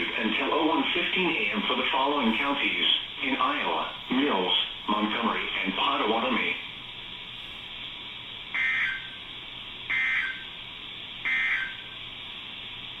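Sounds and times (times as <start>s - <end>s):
two-tone digital code bursts: 9.9s - 10.5s, 11.3s - 11.9s.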